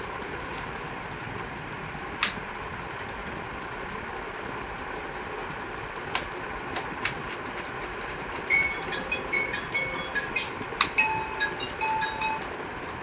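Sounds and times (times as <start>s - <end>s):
parts clicking and tapping: 10.8s - 11.2s.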